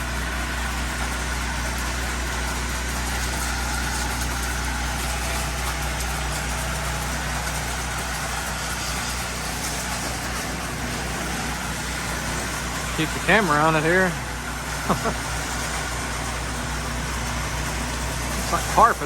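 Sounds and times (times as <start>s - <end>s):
pump hiss: 0.0s - 19.0s
small gasoline engine running: 0.0s - 19.0s.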